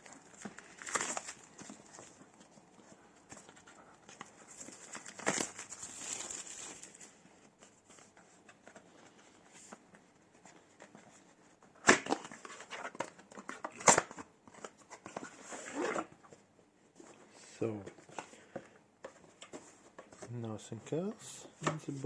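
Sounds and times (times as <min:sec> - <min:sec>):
cardboard packaging rustling: 0:00.0 - 0:16.4.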